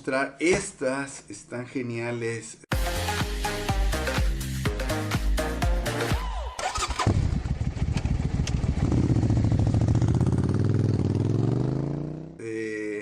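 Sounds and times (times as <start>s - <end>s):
electronic dance music: 2.7s - 6.6s
atv engine revving: 6.2s - 12.4s.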